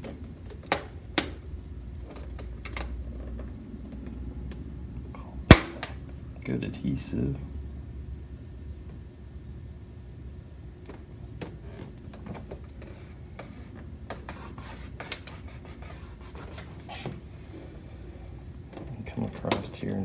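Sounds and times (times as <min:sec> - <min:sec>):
faint low hum: 0:00.0 - 0:20.0
fingers rubbing plastic film: 0:14.2 - 0:17.0.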